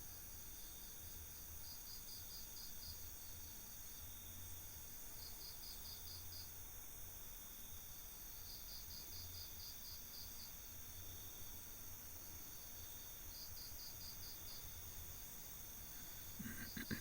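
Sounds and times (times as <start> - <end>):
crickets chirping: 0.0 - 17.0
faint low hum: 10.7 - 17.0.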